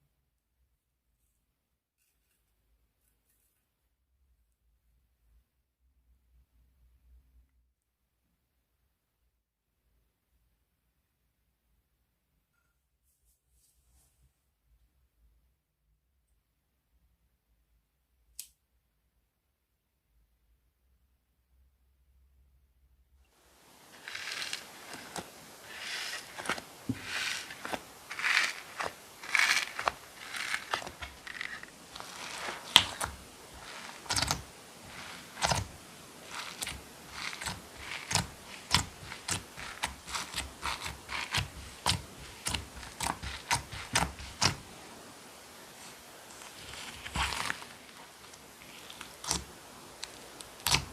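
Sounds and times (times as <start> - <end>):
slime squelching: 23.6 - 44.8, 45.7 - 50.9
slime air pockets popping: 24.0 - 44.6.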